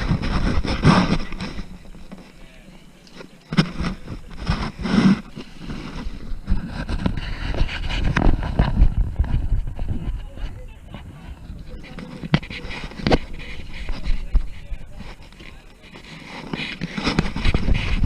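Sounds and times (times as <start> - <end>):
wind rumbling on microphone: 0.0 - 2.2, 3.6 - 15.6, 16.6 - 18.0
voices: 0.0 - 18.0.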